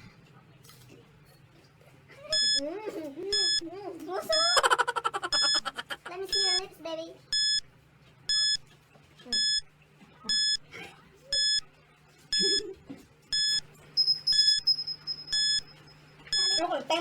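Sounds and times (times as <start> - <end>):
countdown timer beeping: 2.3 - 2.6, 3.3 - 3.6, 4.3 - 6.7, 7.3 - 7.7, 8.3 - 8.6, 9.3 - 9.7, 10.3 - 10.6, 11.4 - 11.6, 13.3 - 16.8.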